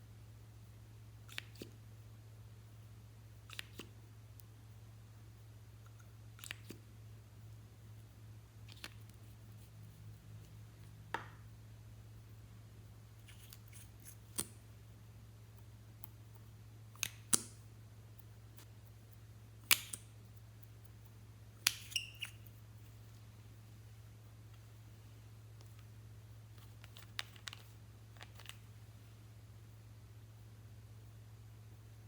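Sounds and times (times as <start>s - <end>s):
faint steady hum: 0.0s - 32.0s
slime clicking and snapping: 19.6s - 20.1s.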